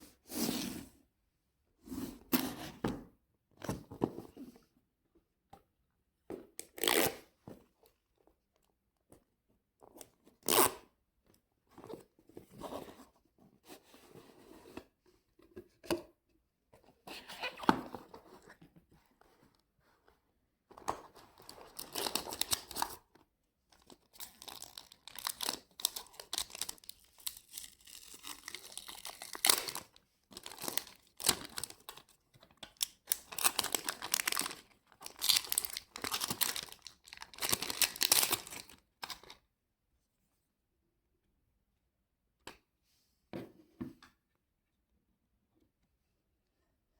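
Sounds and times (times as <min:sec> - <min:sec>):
packaging tearing and crinkling: 0:24.2 - 0:31.8, 0:32.8 - 0:39.2.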